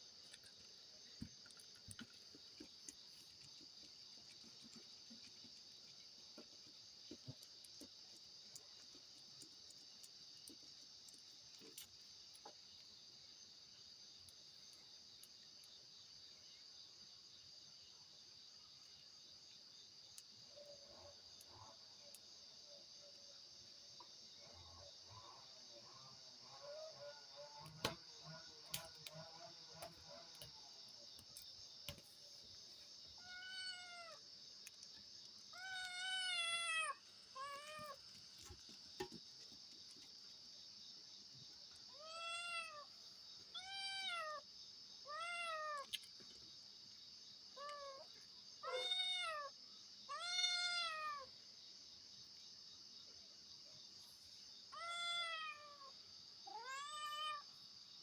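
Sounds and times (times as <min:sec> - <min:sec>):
cat meowing: 0:33.2 - 0:34.2, 0:35.6 - 0:38.0, 0:42.0 - 0:42.8, 0:45.1 - 0:45.9, 0:48.6 - 0:49.5, 0:50.1 - 0:51.3, 0:54.8 - 0:55.9, 0:56.5 - 0:57.4.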